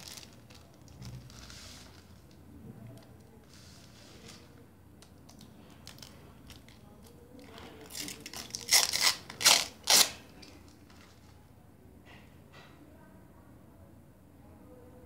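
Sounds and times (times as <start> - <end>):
plastic packaging crinkling: 0.0 - 2.4, 5.0 - 11.1.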